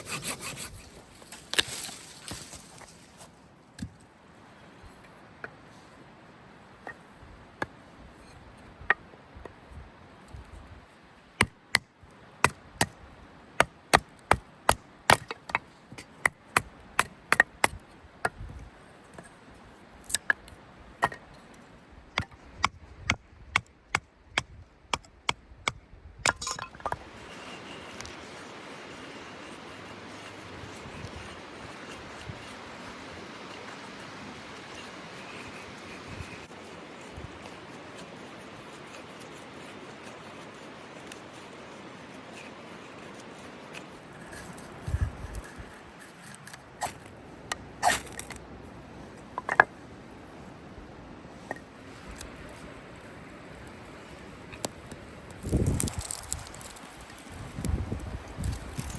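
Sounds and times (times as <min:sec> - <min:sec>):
chopping wood: 0:13.6 - 0:17.8
steady hiss: 0:26.5 - 0:58.9.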